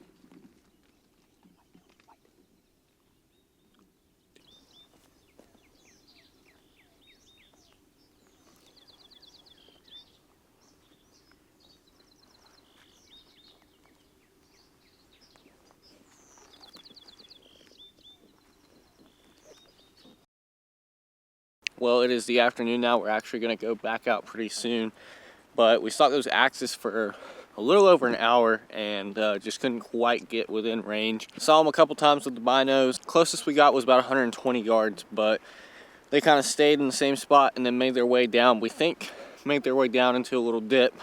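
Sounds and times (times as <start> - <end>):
small birds chirping and trilling: 0.0 - 20.2.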